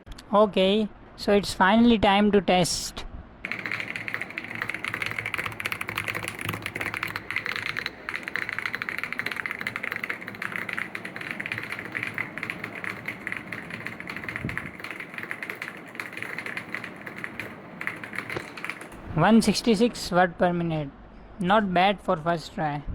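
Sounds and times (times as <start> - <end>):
fast typing on keyboard: 3.4 - 19.9.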